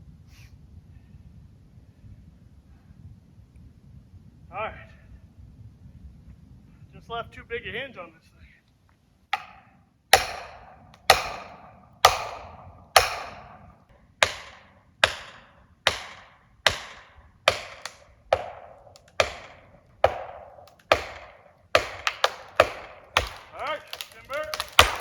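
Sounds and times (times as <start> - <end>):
hatchet being hammered into tree: 9.4 - 25.0.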